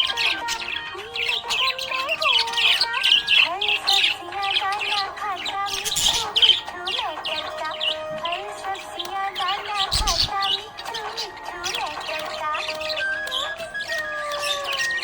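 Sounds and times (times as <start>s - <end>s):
budgies chirping and warbling: 0.0s - 15.0s
song with sung melody: 0.0s - 15.0s.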